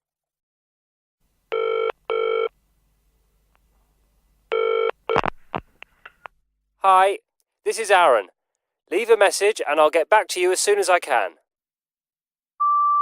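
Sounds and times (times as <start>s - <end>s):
telephone ringing: 1.5s - 2.5s, 4.5s - 5.0s.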